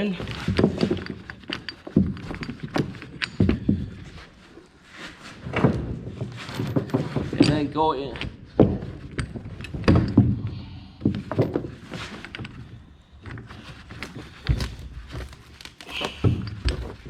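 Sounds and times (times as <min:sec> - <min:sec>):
metal chain clinking: 0:00.0 - 0:04.3.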